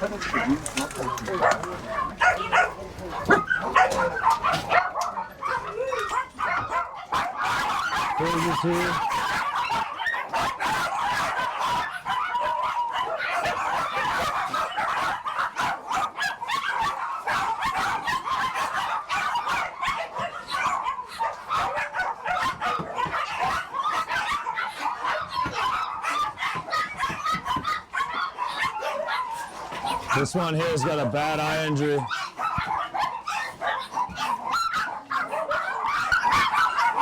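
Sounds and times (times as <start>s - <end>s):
many dogs barking and yelping: 0.0s - 37.0s.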